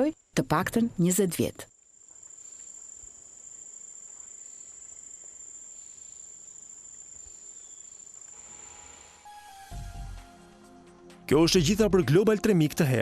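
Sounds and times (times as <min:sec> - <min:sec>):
faint forest ambience hiss: 0:00.0 - 0:13.0
insect high-pitched tone: 0:00.0 - 0:13.0.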